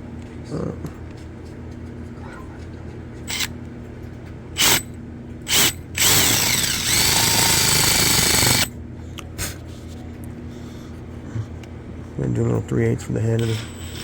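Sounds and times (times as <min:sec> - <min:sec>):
electric drill motor: 0:03.3 - 0:03.5, 0:04.6 - 0:04.8, 0:05.5 - 0:08.7, 0:13.4 - 0:14.0.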